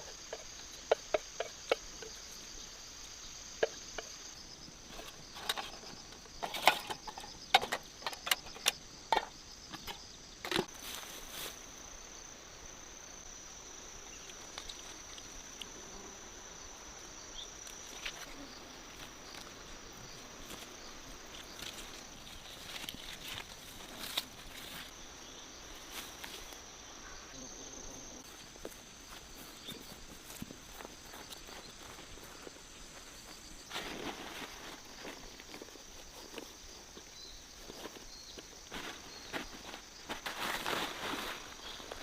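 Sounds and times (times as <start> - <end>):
insects chirring: 0.0 - 42.0.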